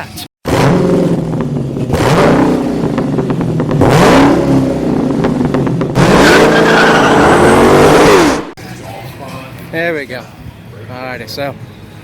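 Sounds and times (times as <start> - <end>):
race car engines revving: 0.4 - 8.6.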